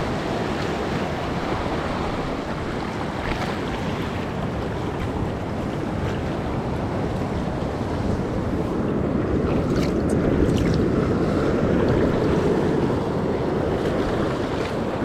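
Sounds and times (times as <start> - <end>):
sea waves: 0.0 - 15.0
wind buffeting microphone: 0.0 - 15.0.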